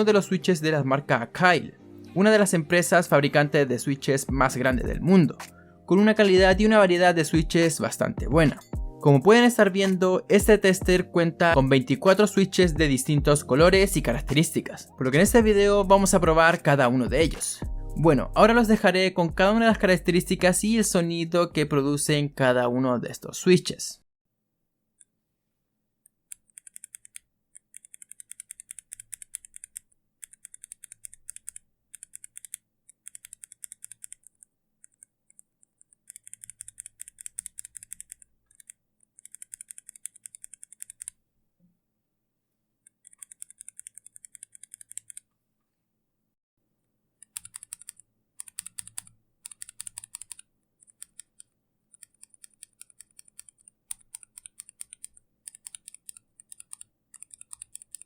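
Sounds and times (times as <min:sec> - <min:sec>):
keyboard switches clicking: 0:47.3 - 0:50.4.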